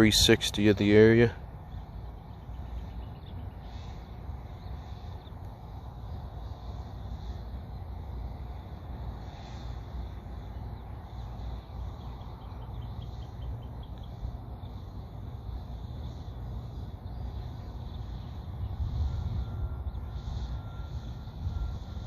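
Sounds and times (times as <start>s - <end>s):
steady low rumble: 0.0s - 22.0s
faint bird trilling: 1.6s - 5.4s, 9.2s - 22.0s.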